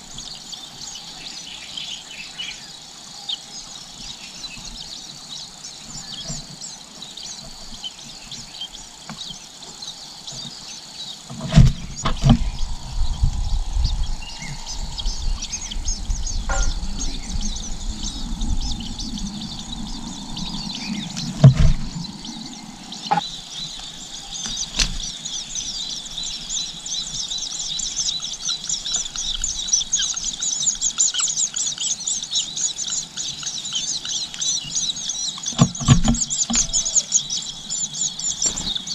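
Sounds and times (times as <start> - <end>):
nestling birds begging chirps: 0.0 - 38.9
loud thumps with low rumble: 11.5 - 23.3.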